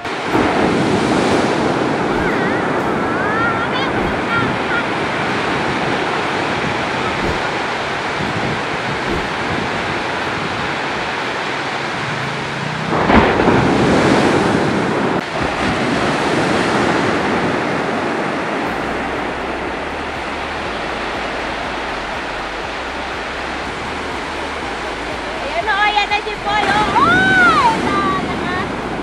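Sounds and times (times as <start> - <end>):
large wave crashing: 0.0 - 29.0
waves breaking on a beach: 0.0 - 29.0.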